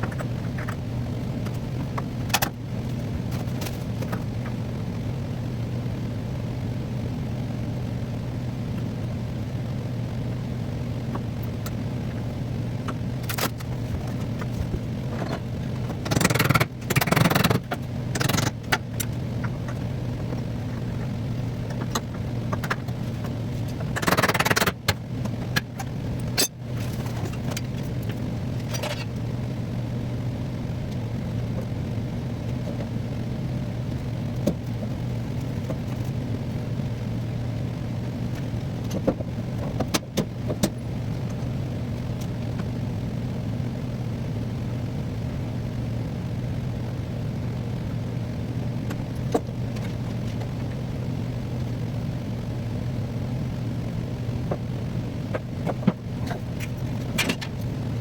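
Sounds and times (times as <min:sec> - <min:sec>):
low mechanical hum: 0:00.0 - 0:58.0.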